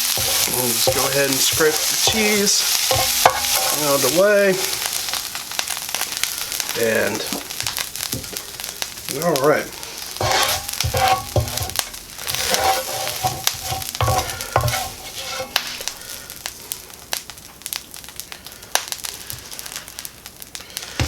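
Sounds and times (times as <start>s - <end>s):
utensil scraping a pan: 0.0s - 5.4s, 9.7s - 16.0s
food sizzling in a frying pan: 0.0s - 21.0s.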